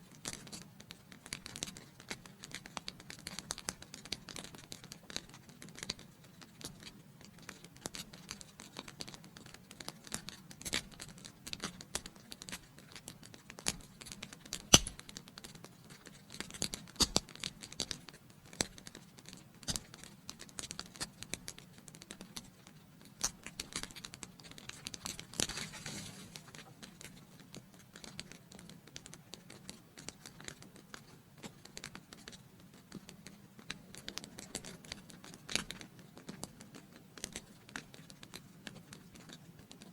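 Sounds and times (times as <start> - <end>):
wood fire crackling: 7.3 - 17.5.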